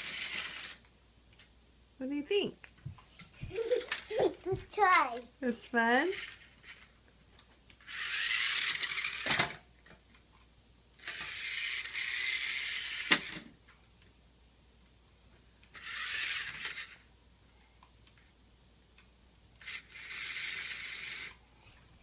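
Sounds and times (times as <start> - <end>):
toy car motor whirring: 0.0 - 0.8, 3.6 - 4.2, 6.1 - 6.9, 7.8 - 9.6, 11.0 - 13.5, 15.7 - 17.0, 19.6 - 21.4
toy car knocking into something: 9.1 - 9.6, 13.0 - 13.5.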